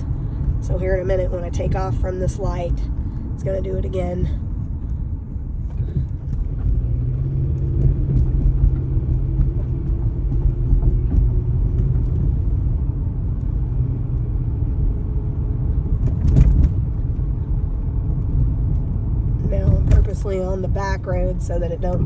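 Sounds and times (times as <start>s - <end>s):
car engine pulling away: 4.4s - 22.0s.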